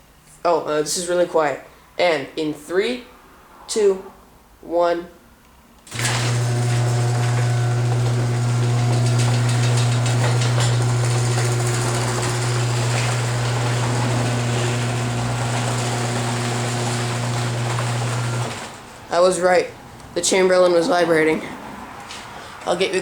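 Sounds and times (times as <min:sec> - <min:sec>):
garage door opener motor hum: 0:05.9 - 0:19.0.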